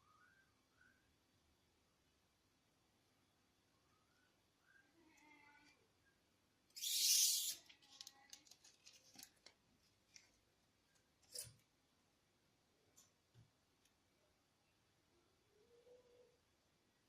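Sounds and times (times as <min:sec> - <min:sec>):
handling rustle: 0:07.7 - 0:10.4.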